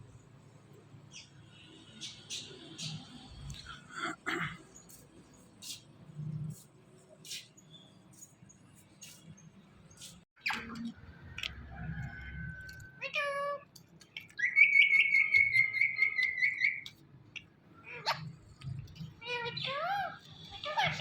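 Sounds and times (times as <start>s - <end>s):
parrot squawking: 17.8s - 18.4s, 19.2s - 21.0s.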